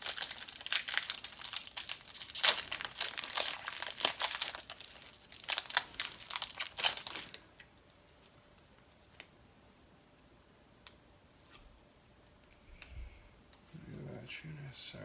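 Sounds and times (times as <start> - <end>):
wrapper tearing and crinkling: 0.0 - 7.6.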